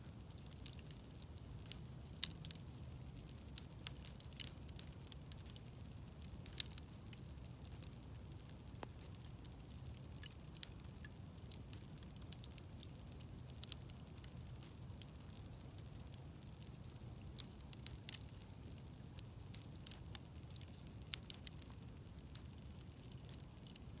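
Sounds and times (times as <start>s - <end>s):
low rumble of burning: 0.0s - 24.0s
bonfire pops and snaps: 0.2s - 24.0s.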